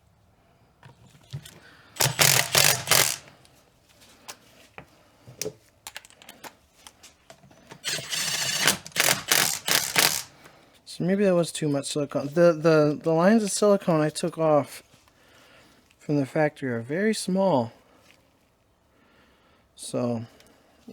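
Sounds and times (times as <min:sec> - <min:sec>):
clicks of bolts and sockets: 0:00.8 - 0:03.3, 0:05.4 - 0:10.3
cordless power tool rattling: 0:00.9 - 0:03.4, 0:07.7 - 0:10.4.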